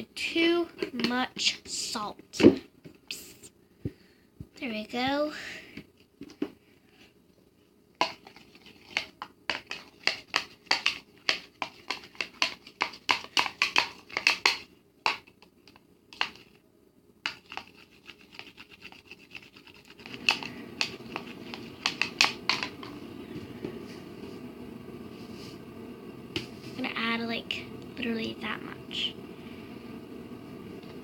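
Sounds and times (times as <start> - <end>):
low background noise: 0.0 - 31.0
spoon scraping a bowl: 17.3 - 22.7.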